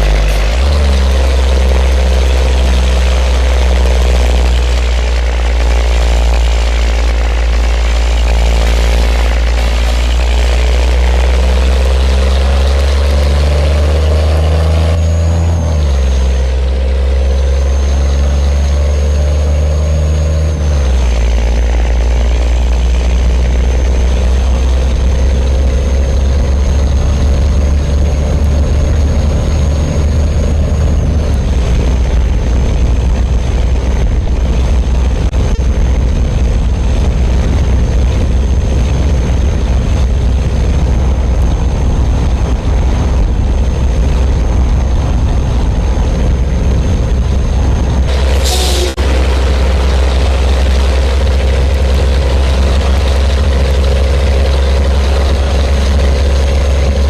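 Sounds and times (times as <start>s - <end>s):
truck diesel engine rumbling: 0.0s - 57.0s
thin high whistle: 48.4s - 49.0s.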